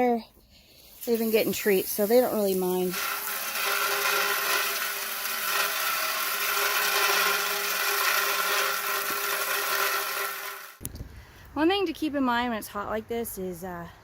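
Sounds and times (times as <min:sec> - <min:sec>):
hose water rushing: 0:00.7 - 0:10.5.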